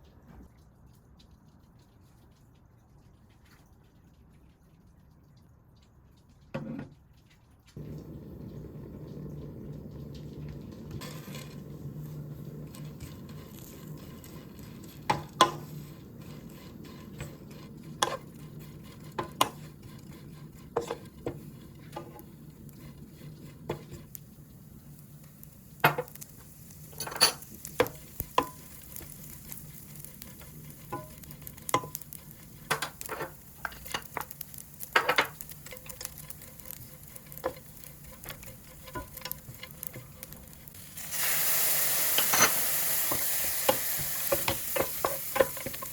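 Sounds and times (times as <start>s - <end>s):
faint sizzle in a pan: 7.7s - 45.9s
spatula scraping a pan: 10.9s - 45.9s.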